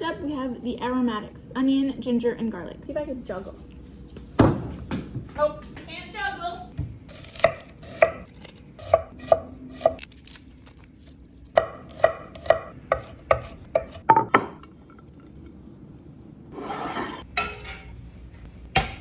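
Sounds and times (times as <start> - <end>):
knife chopping on cutting board: 11.6 - 14.1
knife scraping cutting board: 11.8 - 14.0, 16.5 - 17.3.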